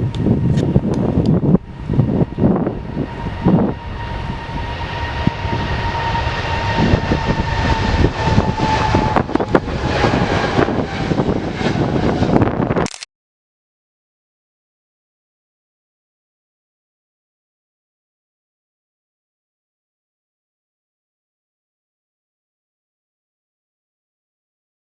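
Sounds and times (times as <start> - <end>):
jet airliner engines passing: 0.0 - 12.9.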